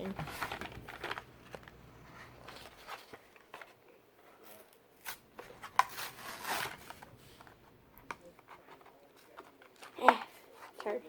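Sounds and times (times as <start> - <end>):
toy packaging clicks and scrapes: 0.0 - 1.8, 4.4 - 7.6
packaging rustle: 0.1 - 3.8.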